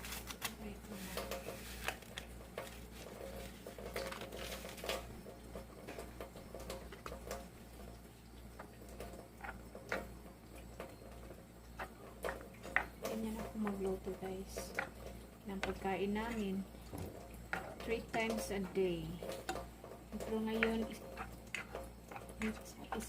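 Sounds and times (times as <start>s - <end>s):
spoon scraping a pot: 17.5s - 19.6s, 20.2s - 23.0s.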